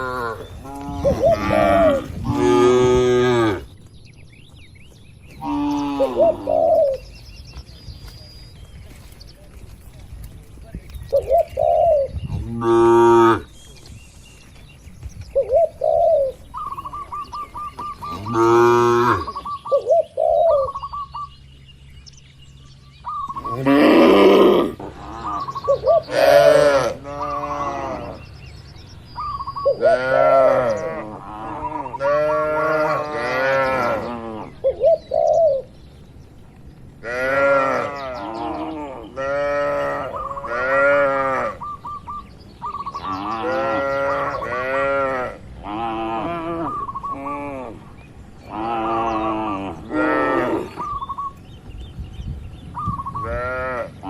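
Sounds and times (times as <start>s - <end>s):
cattle mooing: 0.0s - 3.7s, 23.5s - 28.2s, 29.8s - 34.5s, 37.0s - 41.6s, 48.5s - 50.8s
small birds chirping: 0.0s - 54.0s.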